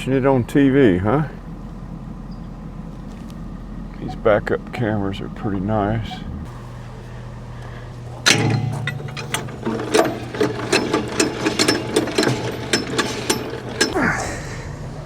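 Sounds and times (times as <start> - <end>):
metal clank: 8.1 - 14.0
trailer hitch metallic clicking: 8.1 - 14.0.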